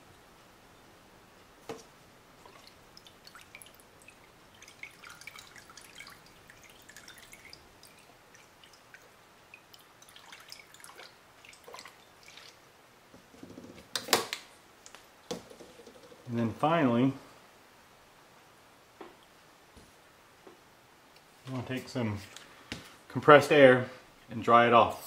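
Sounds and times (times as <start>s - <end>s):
liquid dripping and trickling: 2.4s - 12.6s.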